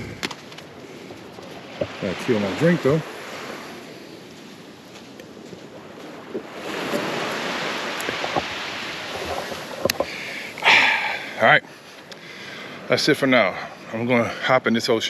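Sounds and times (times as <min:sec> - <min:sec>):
wind on microphone: 0:00.0 - 0:10.6
small waves on sandy beach: 0:00.0 - 0:15.0.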